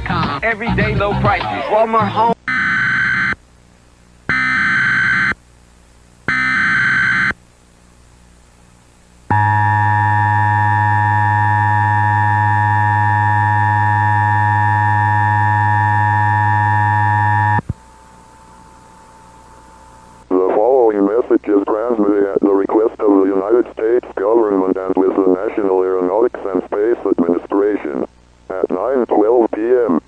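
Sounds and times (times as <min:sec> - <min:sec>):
buzzy electronic data burst: 0:02.5 - 0:03.4, 0:04.3 - 0:05.4, 0:06.3 - 0:07.4, 0:09.3 - 0:20.2
harsh two-tone alert signal: 0:04.3 - 0:05.4, 0:06.3 - 0:07.4
faint steady tone: 0:09.0 - 0:20.4.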